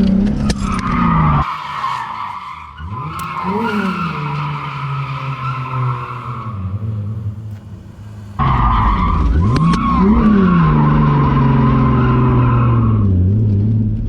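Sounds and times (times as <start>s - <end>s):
car engine revving: 0.0s - 14.0s
tyres squealing: 1.4s - 10.6s.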